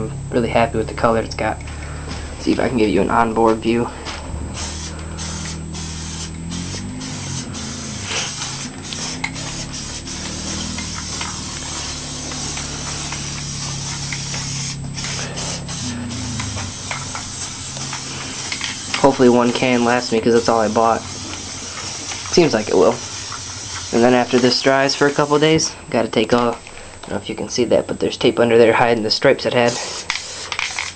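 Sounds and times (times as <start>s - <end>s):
low hum: 0.0s - 29.3s
spray can hissing: 4.6s - 25.6s, 29.6s - 30.9s.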